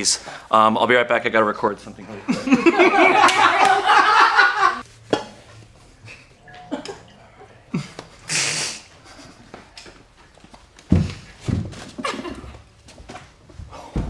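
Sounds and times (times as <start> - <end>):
group of people laughing: 2.1 - 4.8, 8.9 - 9.8, 12.0 - 12.6.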